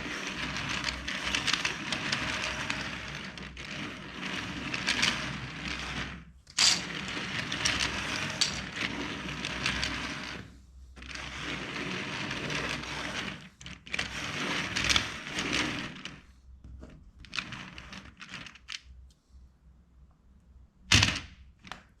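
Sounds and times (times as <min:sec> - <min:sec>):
plastic bricks clicking and clattering: 0:00.2 - 0:03.6, 0:06.0 - 0:08.8.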